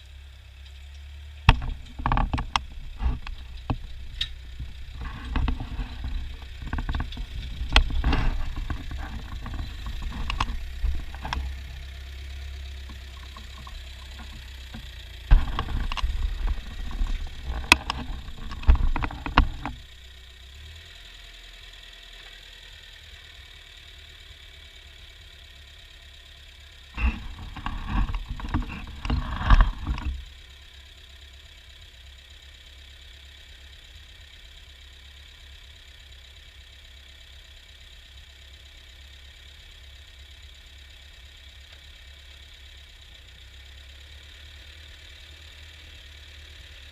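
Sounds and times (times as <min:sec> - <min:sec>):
tractor engine running: 0:00.0 - 0:46.9
loud clattering knocks: 0:13.2 - 0:19.8.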